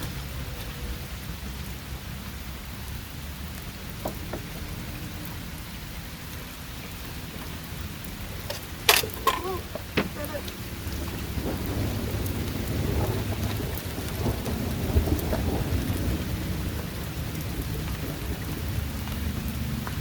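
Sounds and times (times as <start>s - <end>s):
steady rain falling: 0.0s - 20.0s
items clattering: 8.4s - 10.6s.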